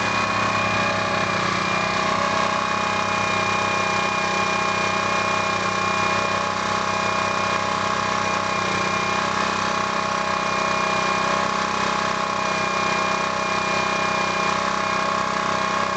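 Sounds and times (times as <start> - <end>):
generator engine humming: 0.0 - 15.9.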